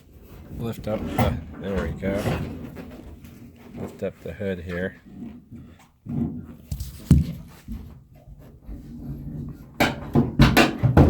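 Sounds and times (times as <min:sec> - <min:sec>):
scraping clunks: 0:00.1 - 0:07.9.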